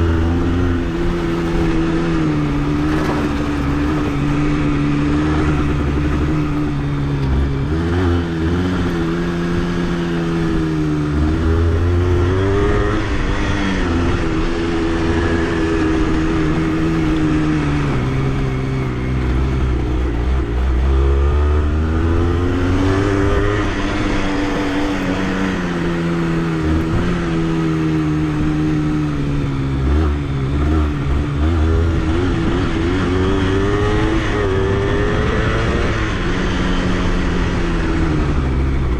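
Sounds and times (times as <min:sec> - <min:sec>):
motorcycle engine revving: 0:00.0 - 0:38.9.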